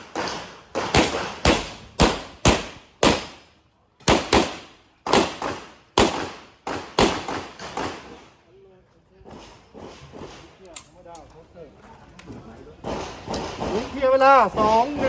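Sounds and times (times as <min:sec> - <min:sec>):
pistol shots: 0:00.0 - 0:03.4, 0:04.0 - 0:08.2.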